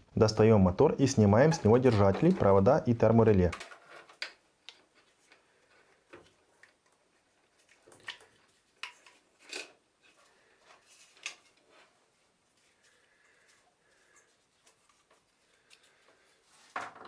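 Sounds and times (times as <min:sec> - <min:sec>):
plastic and metal parts clicking: 0:03.4 - 0:07.0.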